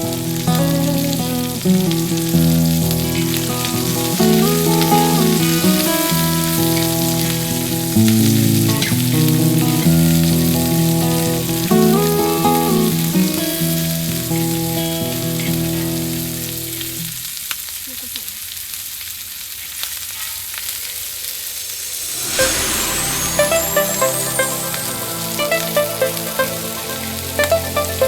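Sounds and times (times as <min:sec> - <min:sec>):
food sizzling on griddle: 0:00.0 - 0:28.0
background music: 0:21.9 - 0:28.0.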